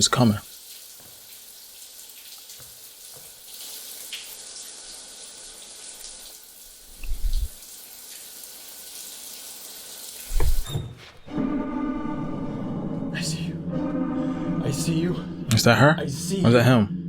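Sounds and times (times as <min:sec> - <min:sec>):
water running from taps: 0:00.0 - 0:11.0
deep thuds: 0:10.3 - 0:10.7.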